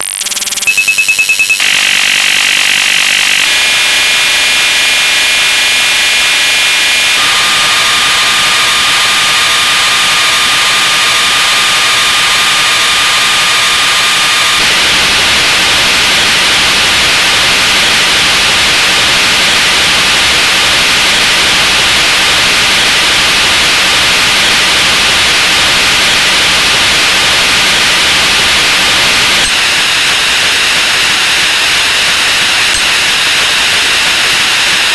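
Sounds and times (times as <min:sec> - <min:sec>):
rapid electronic beeps: 0:00.0 - 0:05.2, 0:29.3 - 0:34.9
stacked steady electronic tones: 0:00.0 - 0:07.4, 0:28.9 - 0:34.9.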